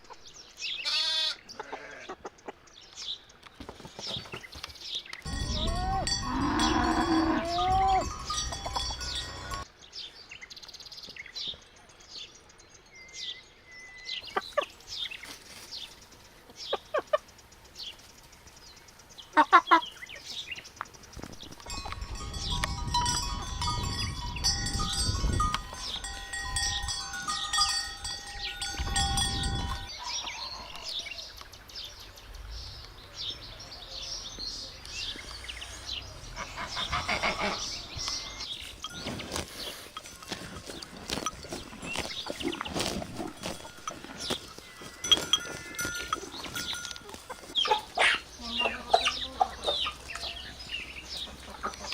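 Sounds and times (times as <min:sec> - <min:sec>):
farm animal calls: 0:00.0 - 0:02.6, 0:05.2 - 0:09.7, 0:16.6 - 0:17.3, 0:19.2 - 0:20.5, 0:35.0 - 0:51.9
livestock bells clanking: 0:05.2 - 0:09.7, 0:21.4 - 0:29.9, 0:36.6 - 0:51.3.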